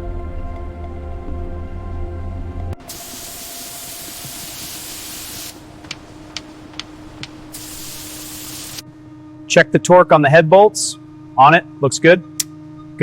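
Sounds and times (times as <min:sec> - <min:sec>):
background music: 0:00.0 - 0:13.0
faint steady hum: 0:00.0 - 0:13.0
loud steady hiss: 0:02.8 - 0:08.8.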